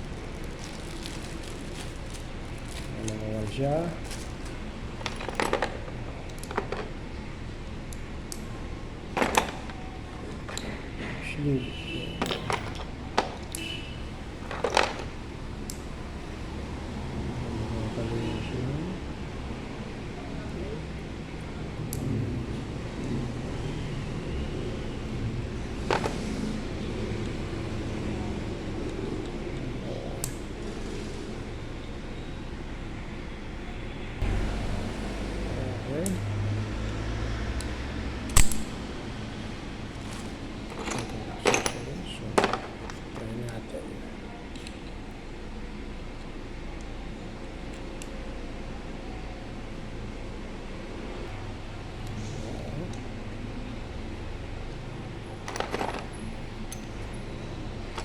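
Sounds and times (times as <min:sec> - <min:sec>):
clicks and knocks from handling objects: 0:00.0 - 0:07.0, 0:12.2 - 0:13.7, 0:14.3 - 0:16.0, 0:25.8 - 0:26.4, 0:38.3 - 0:38.9, 0:40.0 - 0:43.6, 0:55.4 - 0:56.9
steady low hum: 0:00.0 - 0:58.0
sharp click: 0:38.3 - 0:38.8.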